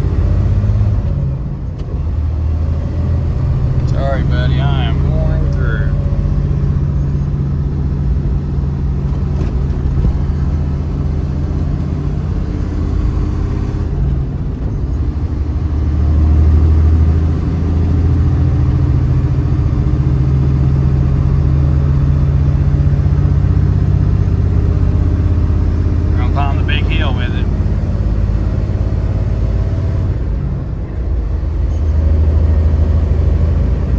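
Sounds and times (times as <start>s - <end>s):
truck engine under load: 0.0s - 33.9s.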